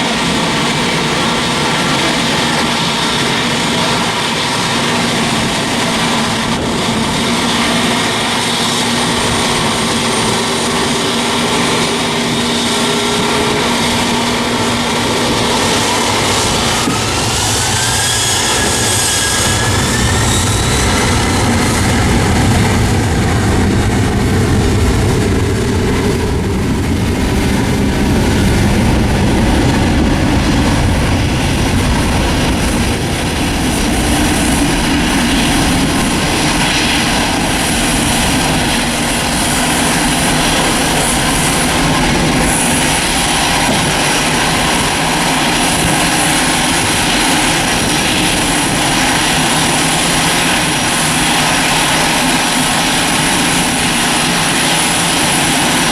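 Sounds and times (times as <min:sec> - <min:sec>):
jet engines running: 0:00.0 - 0:55.9
whining tones rising in pitch: 0:00.2 - 0:30.0.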